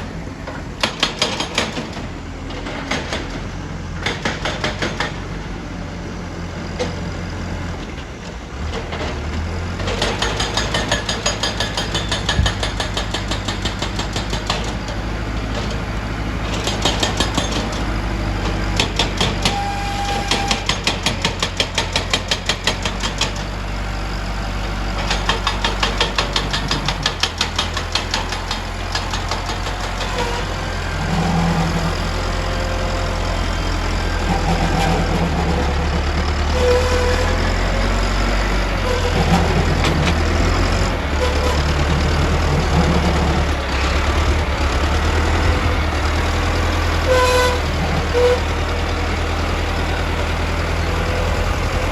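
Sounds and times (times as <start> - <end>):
heavy machinery diesel engine: 0.0 - 51.9.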